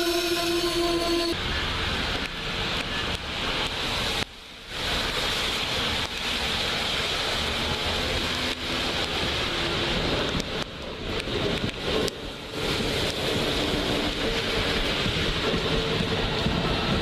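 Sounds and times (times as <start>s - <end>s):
train running past: 0.0s - 17.0s.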